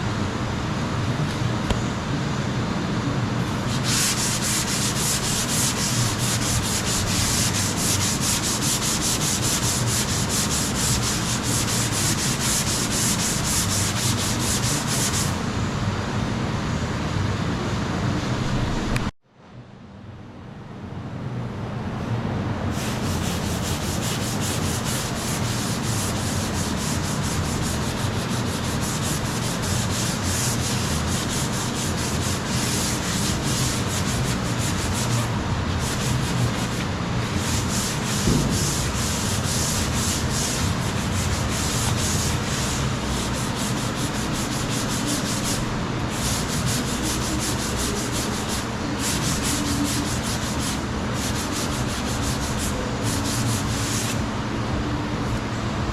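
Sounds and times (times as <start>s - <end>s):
sanding body filler: 3.7s - 15.4s, 22.7s - 54.2s.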